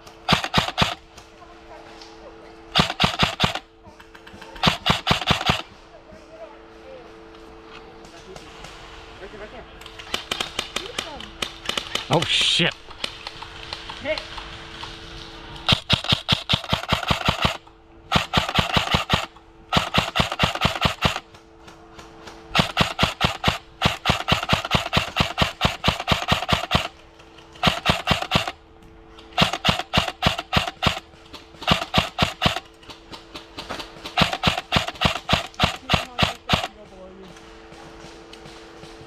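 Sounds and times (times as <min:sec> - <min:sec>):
airsoft rifle firing bursts: 0:00.2 - 0:01.1, 0:02.7 - 0:05.7, 0:09.9 - 0:12.2, 0:15.6 - 0:21.3, 0:22.5 - 0:27.0, 0:27.6 - 0:28.6, 0:29.3 - 0:36.8.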